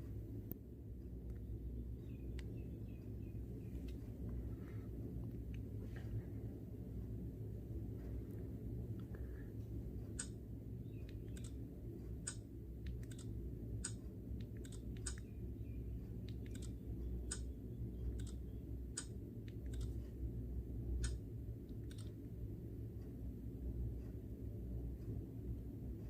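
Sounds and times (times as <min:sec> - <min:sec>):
low steady hum: 0:00.0 - 0:26.0
smartphone clicks: 0:12.3 - 0:15.3.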